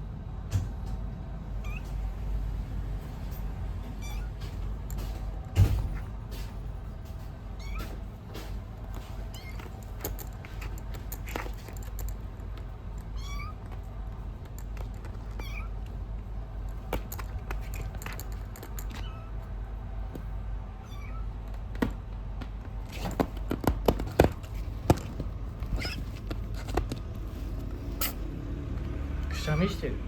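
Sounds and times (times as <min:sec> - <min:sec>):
low steady hum: 0:00.0 - 0:30.0
kitten mewing: 0:01.6 - 0:02.0, 0:13.0 - 0:13.8, 0:15.2 - 0:15.8, 0:20.8 - 0:21.3.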